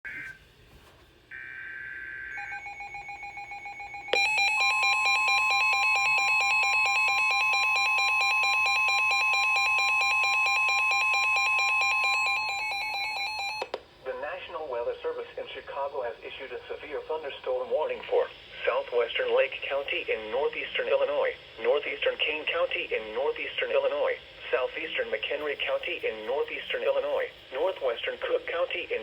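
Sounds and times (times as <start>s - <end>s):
steady high tone: 1.3s - 13.7s
rapidly pulsing alarm beep: 1.4s - 13.7s.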